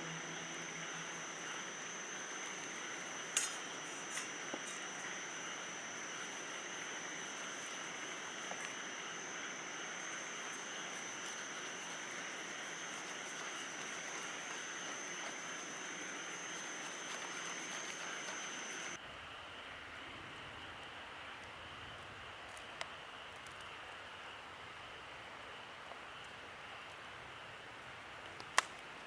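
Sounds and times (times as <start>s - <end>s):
insect trilling: 0.0s - 19.0s.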